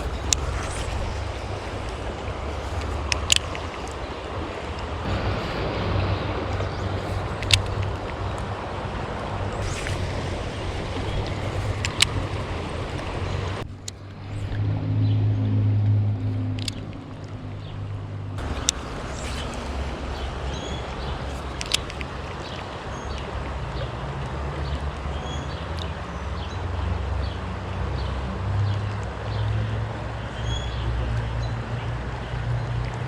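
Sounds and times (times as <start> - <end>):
sharp clicks: 0.0 - 5.6, 6.5 - 14.6, 16.5 - 17.4, 18.4 - 23.3
low rumble: 0.0 - 23.8
creek water rushing: 0.0 - 33.0
faint bird chirps: 18.4 - 23.2.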